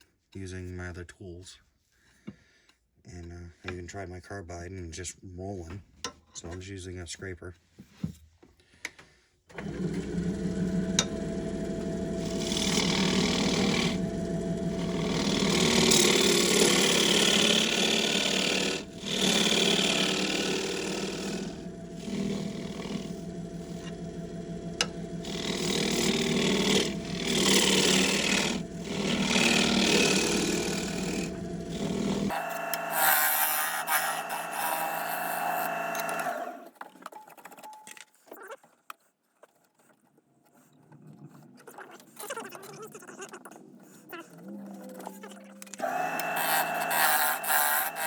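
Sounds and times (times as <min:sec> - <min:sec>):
wood lathe running: 0:09.5 - 0:36.7, 0:45.8 - 0:48.0
scraper cutting wood bowl: 0:12.2 - 0:36.6, 0:45.8 - 0:48.0.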